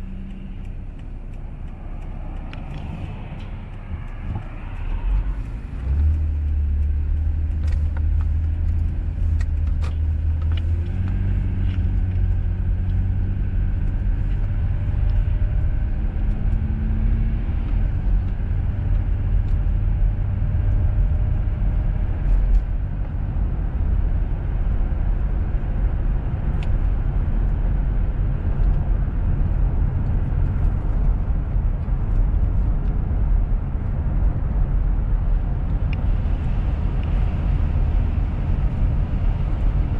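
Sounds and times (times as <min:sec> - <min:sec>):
faint ticks: 0:00.0 - 0:13.0
car engine and tyres rumbling: 0:00.0 - 0:39.9.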